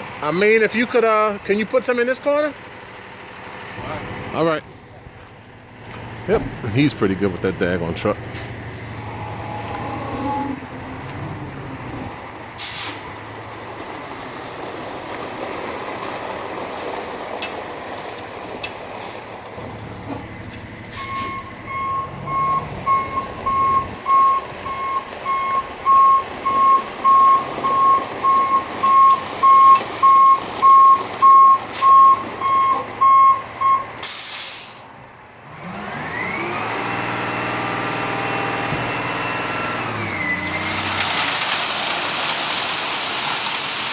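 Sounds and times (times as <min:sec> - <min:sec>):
truck engine revving: 0:00.0 - 0:43.9
truck engine running: 0:00.0 - 0:43.9
reversing alarm beeping: 0:09.0 - 0:10.6, 0:20.9 - 0:34.1
air brake hiss: 0:12.6 - 0:13.1, 0:34.0 - 0:34.9.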